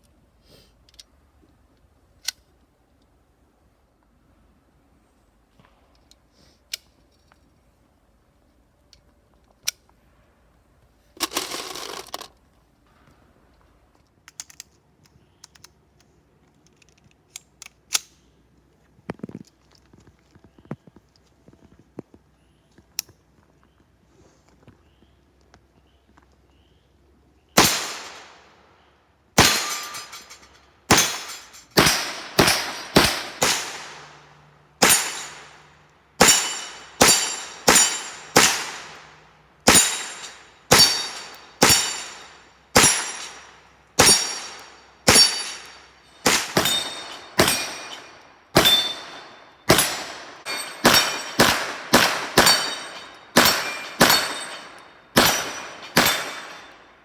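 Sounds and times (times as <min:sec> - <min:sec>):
gunshots: 0:27.6 - 0:28.4, 0:29.4 - 0:30.2, 0:30.9 - 0:34.2, 0:34.8 - 0:35.6, 0:36.2 - 0:39.1, 0:39.7 - 0:56.7
metallic ring of steel targets: 0:29.4 - 0:57.0.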